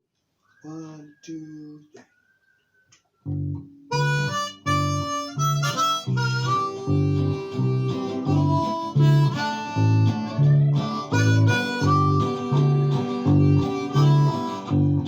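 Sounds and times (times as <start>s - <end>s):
acoustic guitar strumming: 3.3s - 15.0s
harmonica melody: 3.9s - 15.0s.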